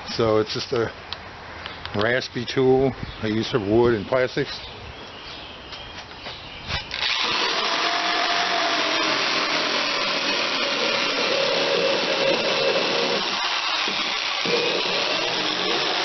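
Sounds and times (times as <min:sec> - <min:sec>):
power tool grinding plastic: 0:06.9 - 0:16.0.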